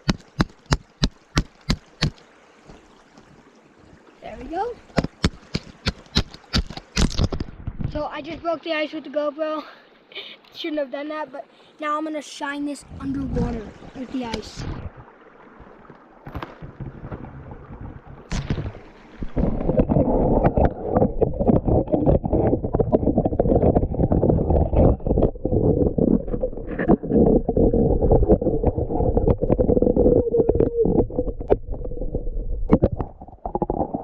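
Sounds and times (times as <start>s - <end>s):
muffled underwater stream rushing: 12.5s - 34.0s.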